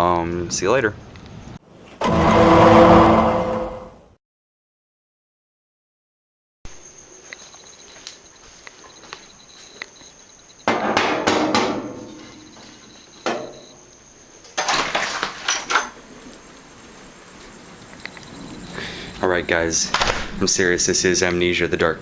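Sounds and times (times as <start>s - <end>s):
faint high chirping tone: 6.7s - 11.0s, 11.8s - 14.6s, 15.7s - 19.7s.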